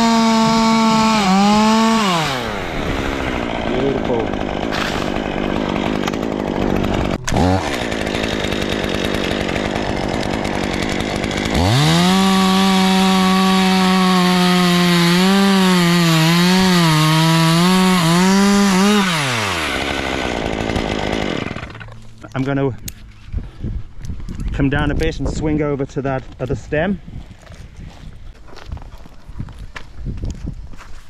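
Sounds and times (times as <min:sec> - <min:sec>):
chainsaw idling and revving: 0:00.0 - 0:22.4.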